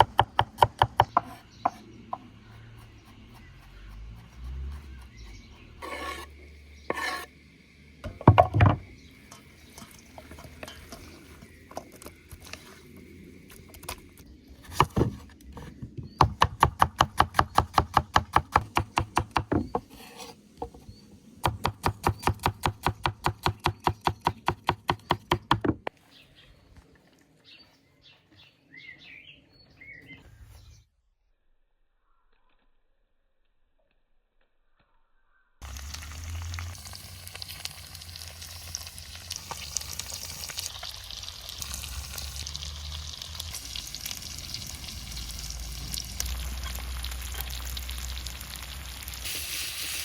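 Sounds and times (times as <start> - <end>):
kitchenware knocks: 8.1 - 8.8
faint bird chirps: 34.7 - 35.6.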